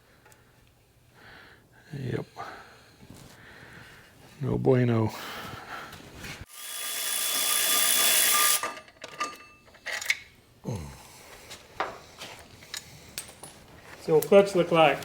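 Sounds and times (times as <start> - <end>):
power tool running: 6.5 - 8.7.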